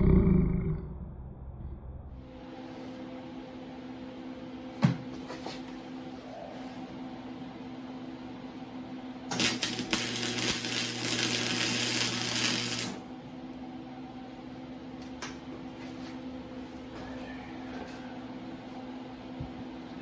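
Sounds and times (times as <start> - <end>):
low hum: 0.0 - 3.4
welding arc crackling and hissing: 9.3 - 13.0.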